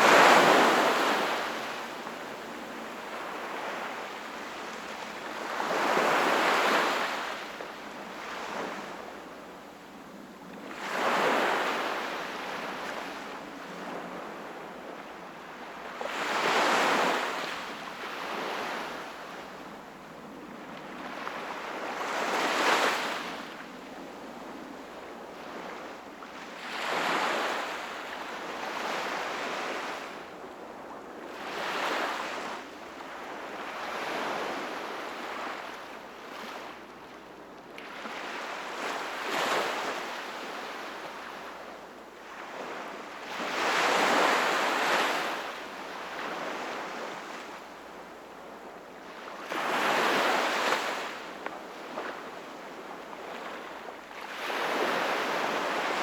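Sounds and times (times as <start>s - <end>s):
small sea waves breaking: 0.0s - 2.0s.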